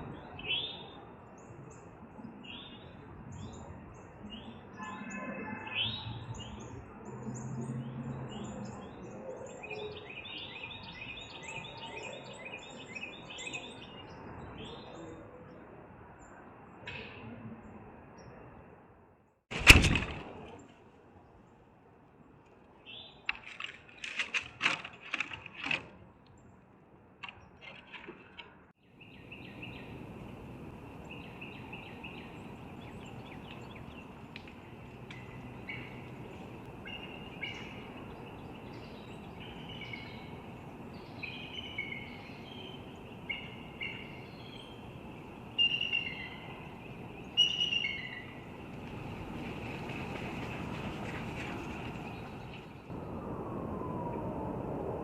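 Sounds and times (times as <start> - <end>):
sharp bird calls: 35.2 - 48.5.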